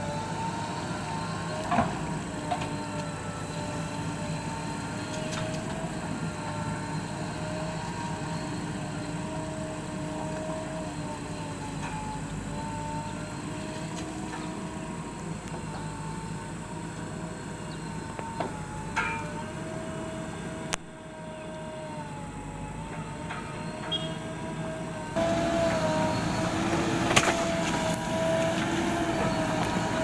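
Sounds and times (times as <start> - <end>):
diesel engine running: 0.0 - 30.0.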